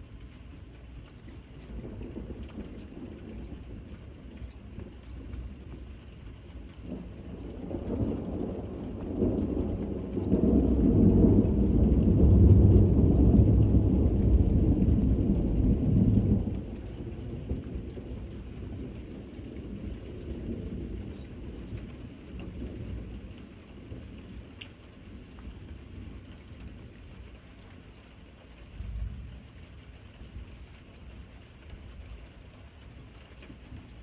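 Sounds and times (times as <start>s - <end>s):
steady rain: 0.0s - 34.0s
thunder rumbling: 0.0s - 34.0s.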